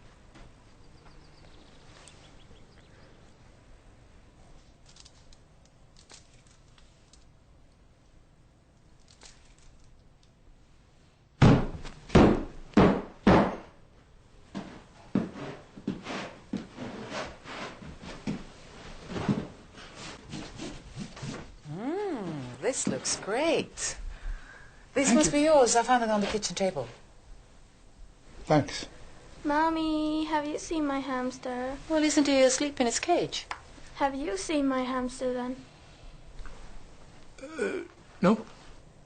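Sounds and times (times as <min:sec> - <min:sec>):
heavy thumps on carpeted floor: 0:11.4 - 0:13.7.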